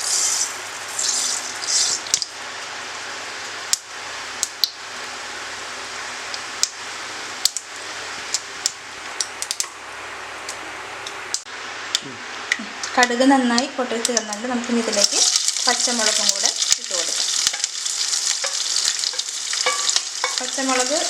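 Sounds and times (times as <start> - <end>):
seeds spluttering in hot oil: 0.0 - 2.4, 14.2 - 21.0
sharp popping in oil: 15.0 - 21.0.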